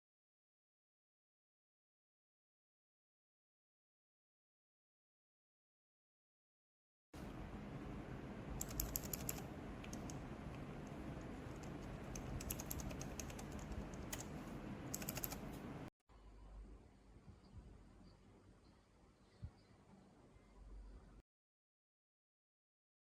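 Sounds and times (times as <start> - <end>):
low background hum: 7.2 - 21.2
soft keyboard keystroke clicks: 8.6 - 15.8.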